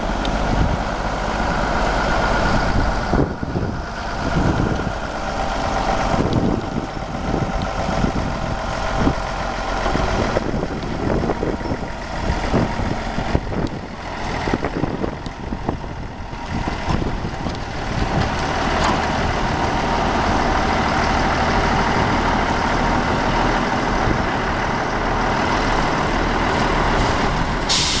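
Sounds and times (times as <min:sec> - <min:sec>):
diesel truck engine running: 0:00.0 - 0:28.0
brief hiss: 0:27.7 - 0:28.0.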